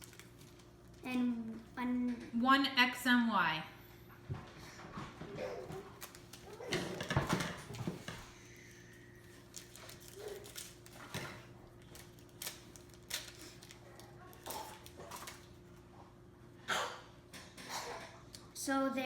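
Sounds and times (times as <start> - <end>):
foil pack crinkling: 0.0 - 1.6, 5.8 - 7.8, 8.6 - 15.7.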